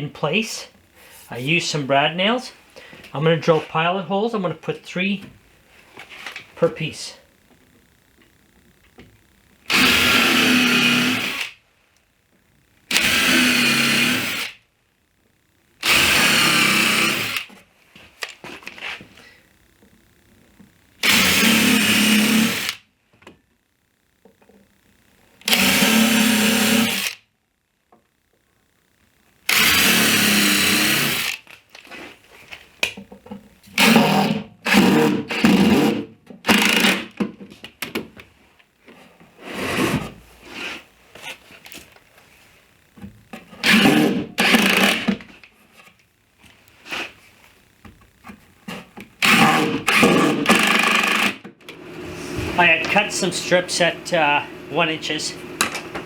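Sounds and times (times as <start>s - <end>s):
power drill drilling into plywood: 9.7s - 11.6s, 12.9s - 14.6s, 15.8s - 17.5s, 21.0s - 22.8s, 25.4s - 27.2s, 29.5s - 31.4s, 33.8s - 37.1s, 43.6s - 45.2s, 49.2s - 51.4s.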